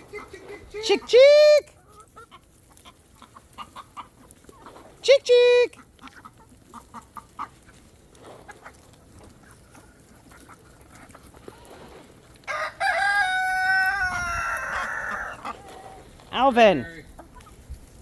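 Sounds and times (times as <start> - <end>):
chickens clucking softly: 1.8 - 5.0, 5.8 - 16.3, 17.1 - 17.7
rooster crowing: 12.5 - 15.4.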